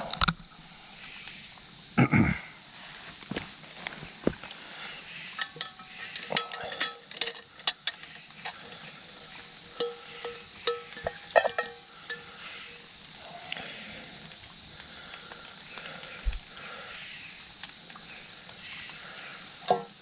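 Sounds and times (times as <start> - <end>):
small metal objects clinking: 5.4 - 12.9.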